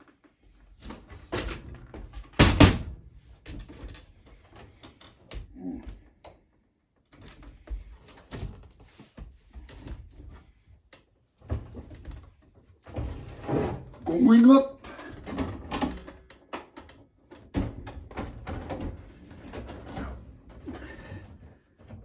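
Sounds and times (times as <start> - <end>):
microwave oven knocking and thumping: 2.3 - 3.0.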